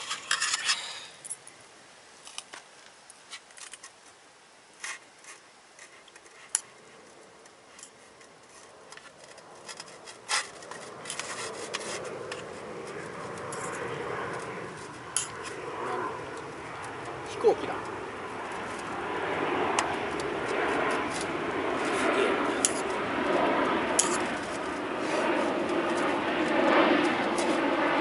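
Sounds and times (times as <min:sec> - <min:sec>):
camp cookware clicking and scraping: 0:00.0 - 0:01.0
airliner climbing overhead: 0:06.7 - 0:28.0.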